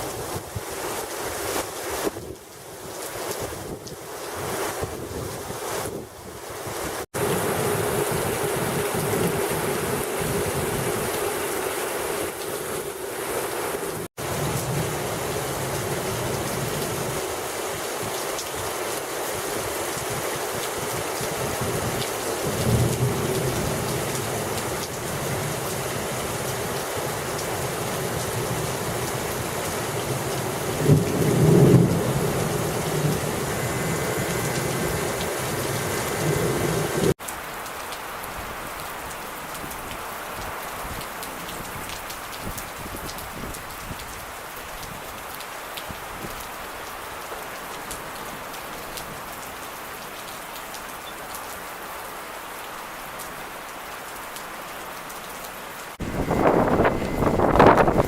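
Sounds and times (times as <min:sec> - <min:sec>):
heavy rain: 0:00.0 - 0:58.0
thunder rumble: 0:30.0 - 0:37.1, 0:56.0 - 0:58.0.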